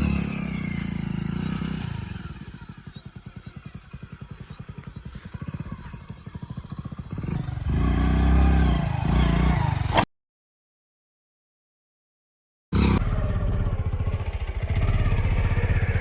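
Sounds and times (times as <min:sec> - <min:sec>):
motorcycle engine puttering: 0:00.0 - 0:10.0.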